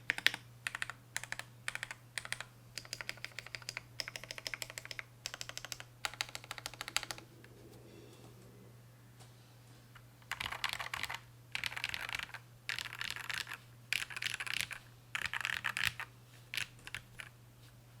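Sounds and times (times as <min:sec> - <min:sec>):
keyboard typing: 0:00.0 - 0:07.3, 0:10.2 - 0:17.3.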